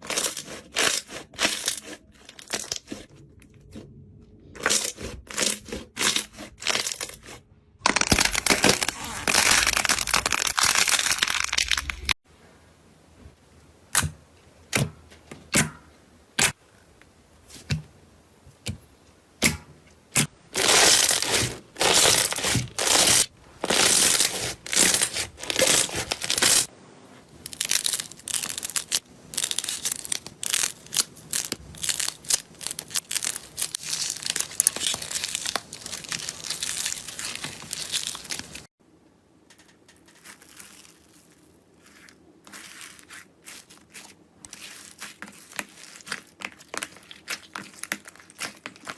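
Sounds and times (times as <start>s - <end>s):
slime crackling and crunching: 0.0s - 3.1s, 4.6s - 12.2s, 20.5s - 26.7s, 27.4s - 38.7s, 40.1s - 48.9s.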